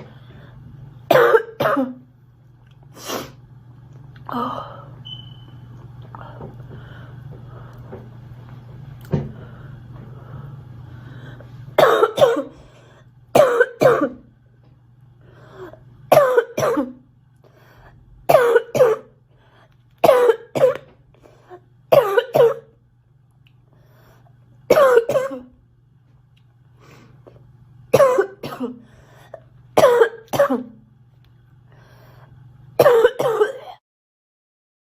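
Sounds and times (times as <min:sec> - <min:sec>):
girl coughing: 0:01.1 - 0:02.0, 0:11.8 - 0:12.6, 0:13.4 - 0:14.3, 0:16.1 - 0:17.0, 0:18.3 - 0:19.2, 0:20.0 - 0:20.9, 0:21.9 - 0:22.7, 0:24.7 - 0:25.6, 0:27.9 - 0:28.8, 0:29.8 - 0:30.8, 0:32.8 - 0:33.8.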